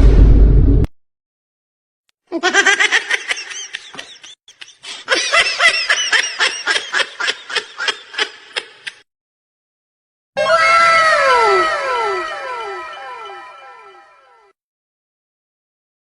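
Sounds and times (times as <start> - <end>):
person laughing: 2.3 - 9.0.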